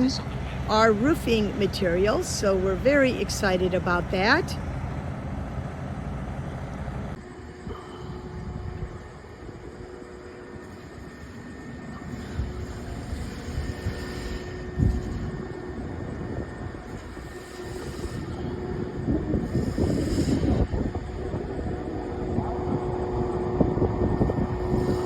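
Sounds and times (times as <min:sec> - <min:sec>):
heavy machinery engine rumbling: 0:00.0 - 0:25.0.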